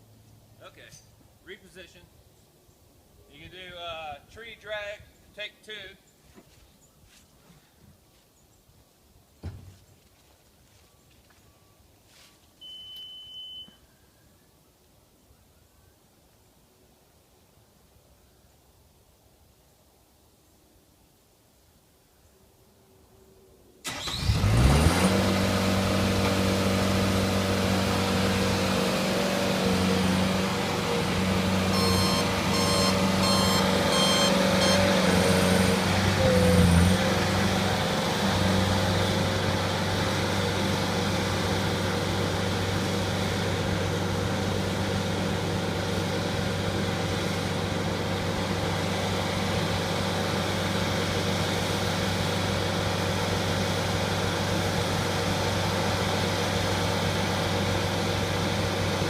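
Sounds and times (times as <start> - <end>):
reversing alarm beeps: 12.6 - 13.8, 31.7 - 35.0
loader engine starting and running: 23.8 - 59.0.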